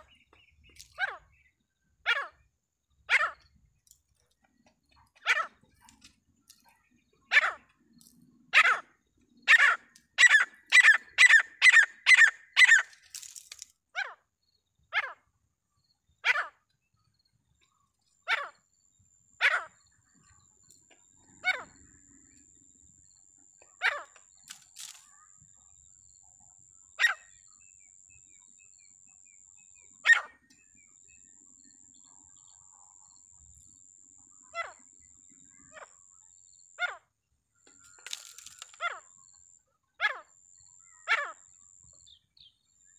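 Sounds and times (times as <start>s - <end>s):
francolin calling: 4.9s - 13.3s.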